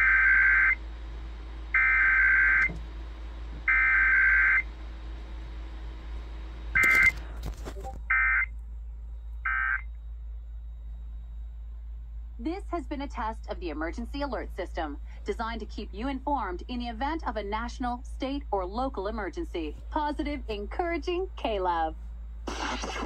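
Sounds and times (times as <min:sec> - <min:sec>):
radio crackle: 0:06.8 - 0:08.0, 0:22.5 - 0:23.0.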